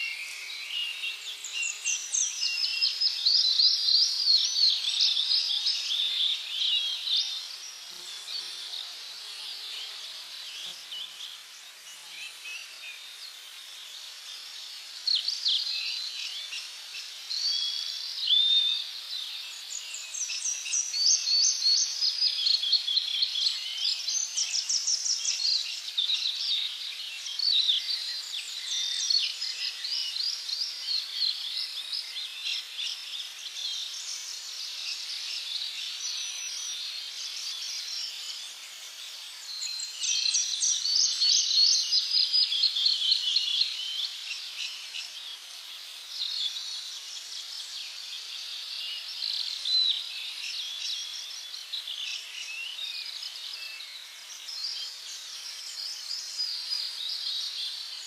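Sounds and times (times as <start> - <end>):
birds chirping and trilling: 0.0 - 58.0.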